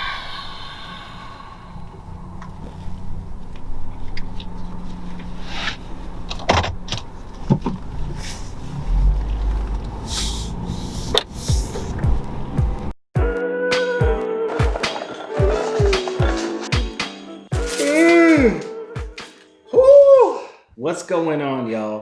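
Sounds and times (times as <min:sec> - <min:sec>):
car low rumble: 0:00.1 - 0:13.0.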